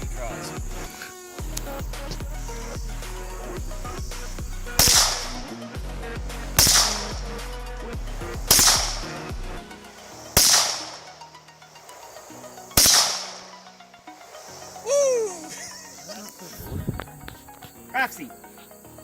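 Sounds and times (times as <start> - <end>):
pistol shots with echo: 4.8 - 5.4, 6.6 - 7.2, 8.5 - 9.1, 10.4 - 11.1, 12.8 - 13.5.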